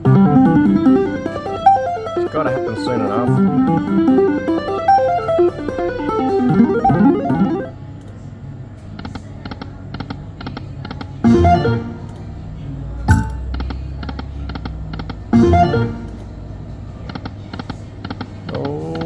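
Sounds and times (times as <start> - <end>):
electronic plucked notes: 0.0 - 7.7, 13.1 - 13.5
slot machine jingle: 1.0 - 7.7, 13.1 - 13.5
sharp click: 13.1 - 13.5
short repeated tones: 13.1 - 13.5.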